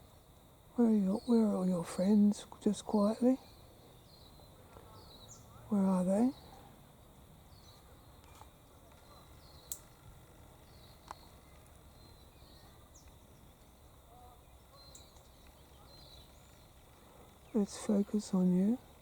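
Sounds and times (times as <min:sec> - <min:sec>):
faint bird chirps: 0:00.9 - 0:06.8, 0:07.5 - 0:19.0
sharp clicks: 0:08.2 - 0:09.9.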